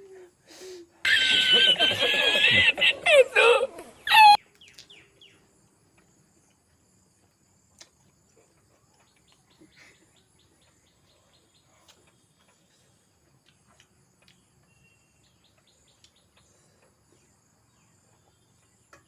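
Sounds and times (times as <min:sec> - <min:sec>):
person laughing: 0:01.1 - 0:04.4.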